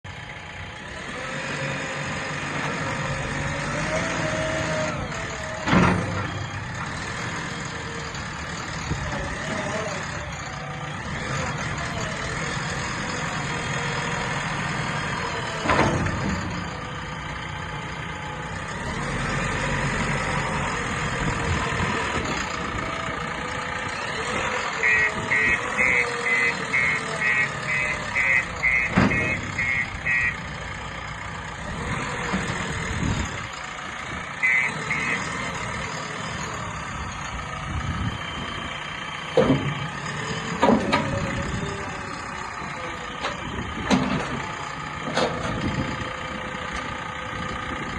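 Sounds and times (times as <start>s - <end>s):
diesel engine running: 0.0s - 47.9s
reversing alarm beeping: 24.8s - 30.5s, 34.4s - 35.3s
sharp clunks: 28.9s - 29.4s, 39.3s - 39.8s.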